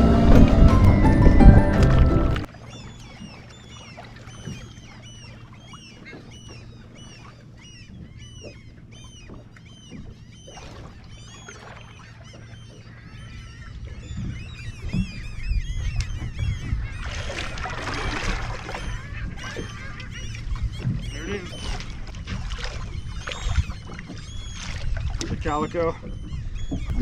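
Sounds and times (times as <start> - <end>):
boat engine idling: 0.0 - 2.5
seabirds calling: 0.0 - 27.0.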